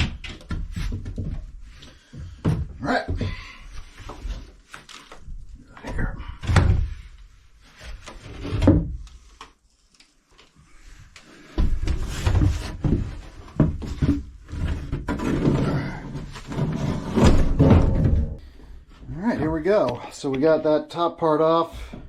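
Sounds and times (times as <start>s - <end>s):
wood knocking and creaking: 0.0s - 7.1s, 11.4s - 18.4s.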